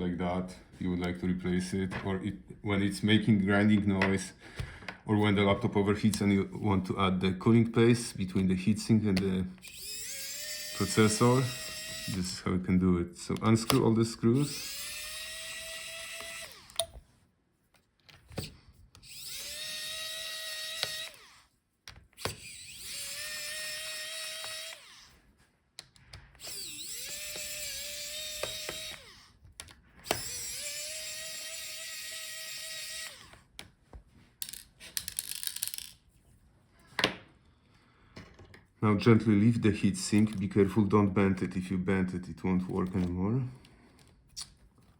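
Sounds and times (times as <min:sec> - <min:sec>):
electric screwdriver whine: 0:09.6 - 0:12.3, 0:14.4 - 0:16.9, 0:19.0 - 0:21.5, 0:22.2 - 0:25.2, 0:26.4 - 0:29.3, 0:30.0 - 0:33.4.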